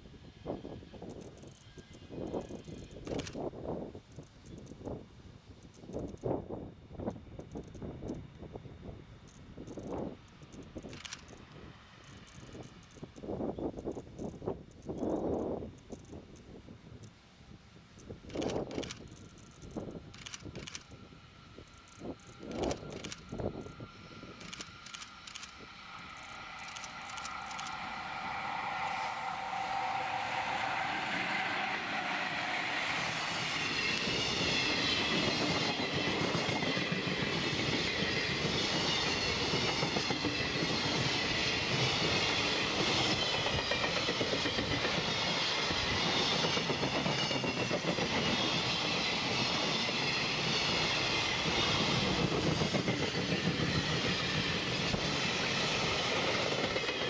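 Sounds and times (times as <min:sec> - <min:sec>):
freight train passing: 0:00.0 - 0:57.0
steady ringing tone: 0:21.7 - 0:39.6.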